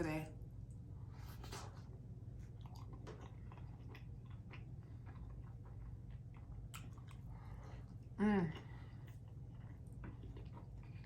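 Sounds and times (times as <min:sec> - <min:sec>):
person chewing food: 0:01.2 - 0:11.0.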